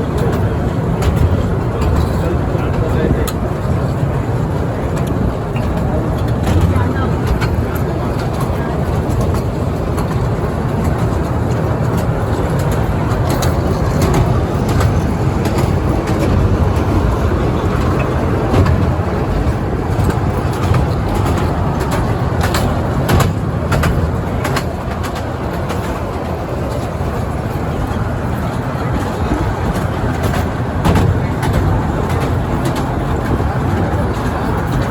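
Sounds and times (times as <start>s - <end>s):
ferry engine droning: 0.0s - 34.9s.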